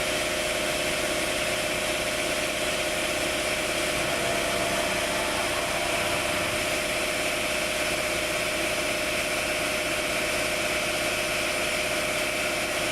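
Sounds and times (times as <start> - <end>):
grinding machine whine and hiss: 2.0 - 9.2.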